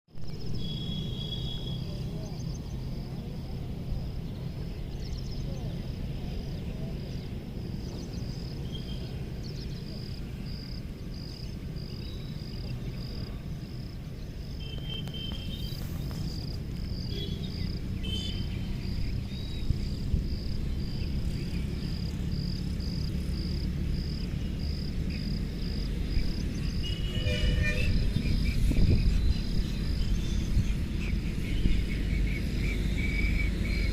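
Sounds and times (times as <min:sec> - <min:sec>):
cricket chirping: 0:00.2 - 0:33.9
low outdoor rumble: 0:00.2 - 0:33.9.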